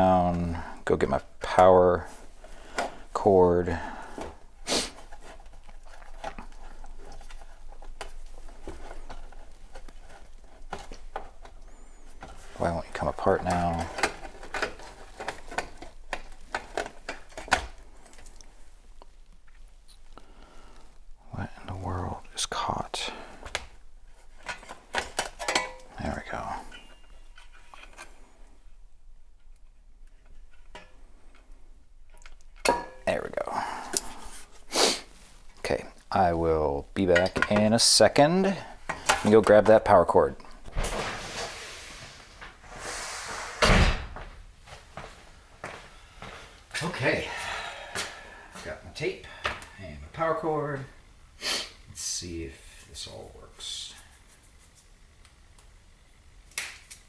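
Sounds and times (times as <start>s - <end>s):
plastic parts clicking and tapping: 5.2s - 18.5s.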